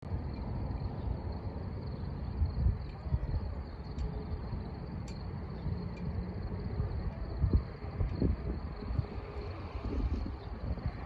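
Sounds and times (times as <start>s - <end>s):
low uneven rumble: 0.2s - 11.0s
faint ticks: 3.8s - 9.0s.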